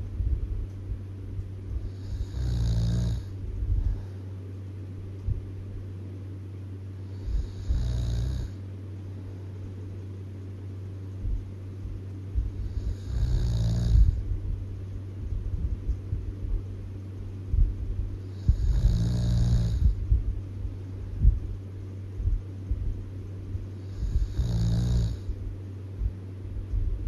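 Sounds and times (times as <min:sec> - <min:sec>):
low hum: 0:00.0 - 0:27.0
loud snoring: 0:01.9 - 0:03.3, 0:07.2 - 0:08.6, 0:12.7 - 0:14.2, 0:18.3 - 0:20.0, 0:23.9 - 0:25.3.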